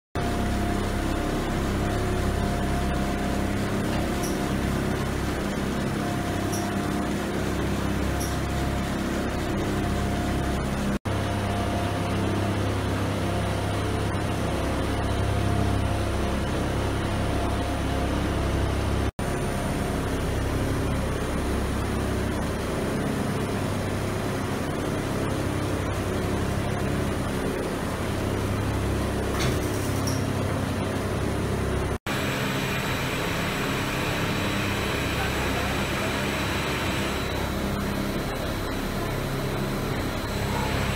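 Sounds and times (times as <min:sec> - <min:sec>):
cutting machine humming and whining: 0:32.1 - 0:40.9.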